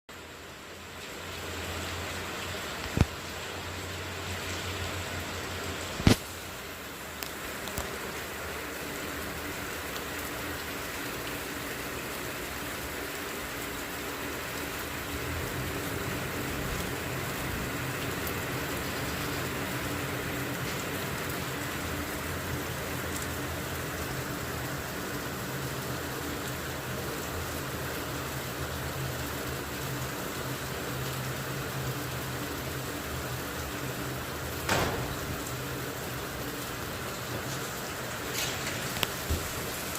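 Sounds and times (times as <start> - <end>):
rain falling: 0.1 - 39.9
sharp knocks: 34.7 - 35.3.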